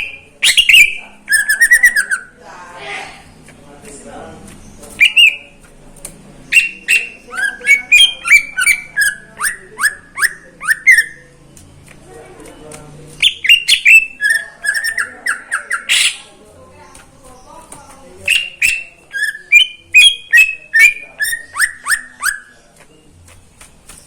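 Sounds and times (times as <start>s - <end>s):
bird singing whistled notes: 0.0s - 2.4s, 4.9s - 5.6s, 6.4s - 11.3s, 13.2s - 16.3s, 17.3s - 23.1s.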